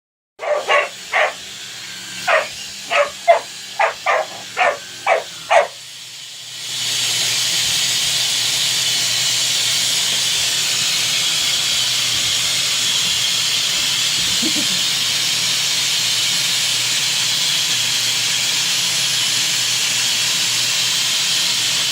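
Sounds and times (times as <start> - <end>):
puppy barking: 0.4 - 1.4, 2.2 - 5.8
vacuum cleaner motor hissing: 0.4 - 21.9.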